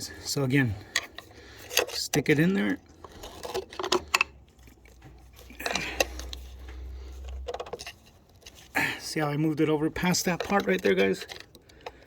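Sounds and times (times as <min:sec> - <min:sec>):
metal tool scraping: 0:00.8 - 0:04.4.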